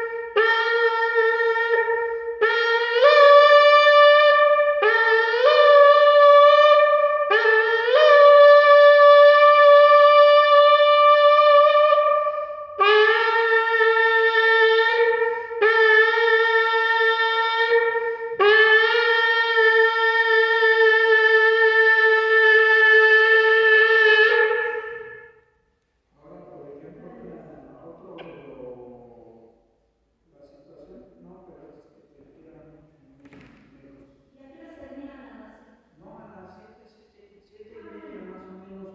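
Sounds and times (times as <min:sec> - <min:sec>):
shofar blasts: 0:00.0 - 0:25.5.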